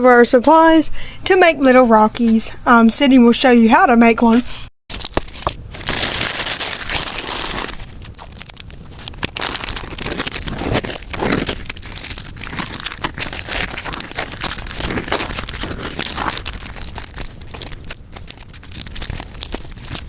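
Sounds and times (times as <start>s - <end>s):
packaging crinkling: 4.9s - 20.0s.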